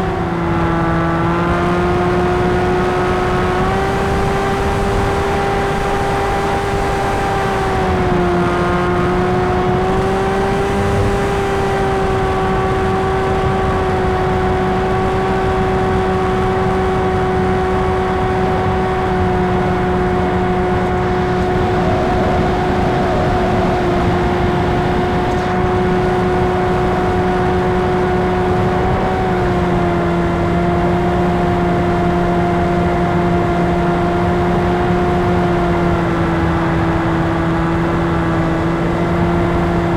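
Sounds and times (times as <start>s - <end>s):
wind rush: 19.6s - 28.3s
electric motor and propeller whine: 19.7s - 27.6s.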